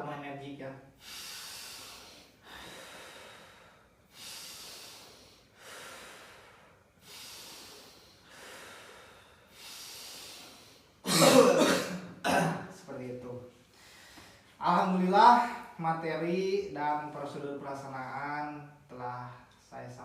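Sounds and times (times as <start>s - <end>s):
person breathing deeply: 0.9s - 11.1s, 13.7s - 14.6s.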